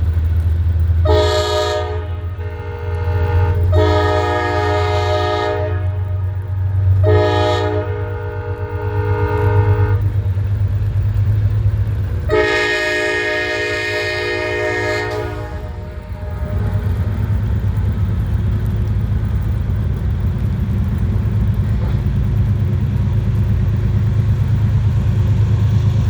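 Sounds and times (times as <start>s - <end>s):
diesel locomotive rumble: 0.0s - 26.0s
train air horn blasts: 1.0s - 10.3s, 12.3s - 17.5s.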